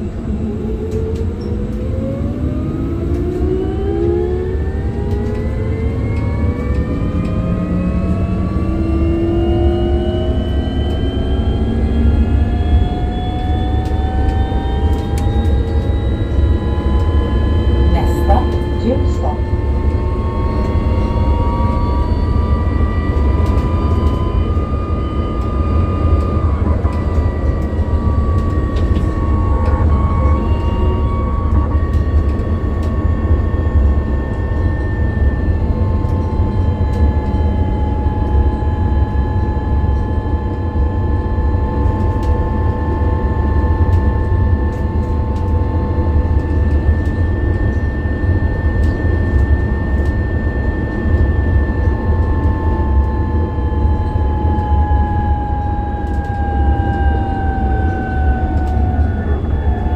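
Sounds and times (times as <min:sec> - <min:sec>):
low rumble: 0:00.0 - 0:48.8
electric bus motor whining: 0:00.0 - 0:59.9.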